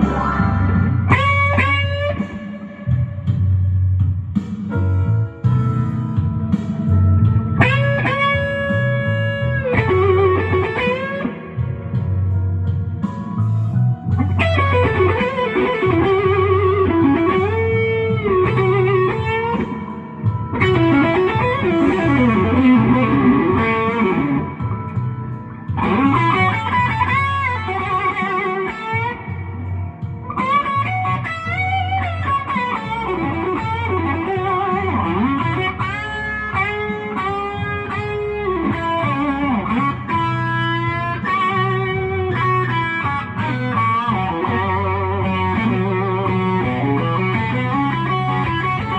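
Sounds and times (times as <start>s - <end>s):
electric guitar blues solo: 0.0s - 3.5s, 7.5s - 12.0s, 14.1s - 48.9s
bass line: 0.0s - 48.9s.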